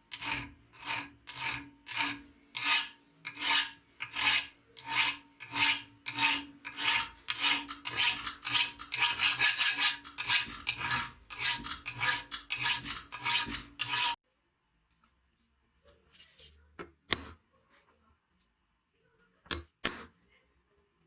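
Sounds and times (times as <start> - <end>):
file scraping on steel: 0.0 - 14.2.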